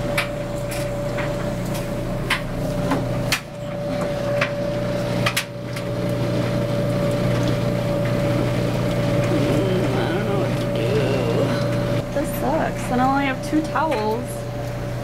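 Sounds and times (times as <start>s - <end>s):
machine hum with high whine: 0.0s - 15.0s.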